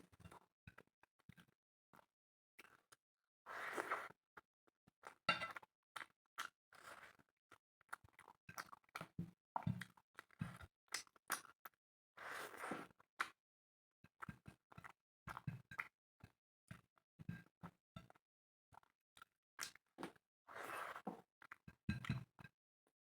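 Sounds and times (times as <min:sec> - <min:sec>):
person chewing food: 0:05.0 - 0:09.1, 0:09.8 - 0:10.4, 0:14.3 - 0:15.9, 0:19.6 - 0:20.2.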